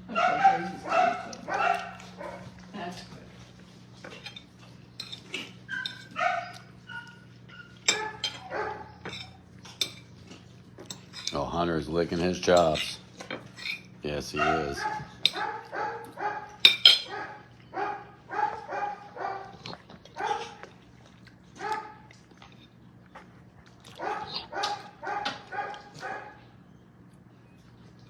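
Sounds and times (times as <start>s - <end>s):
dog yapping: 0.1s - 2.6s, 5.6s - 9.4s, 14.3s - 20.7s, 21.6s - 22.1s, 23.9s - 26.5s.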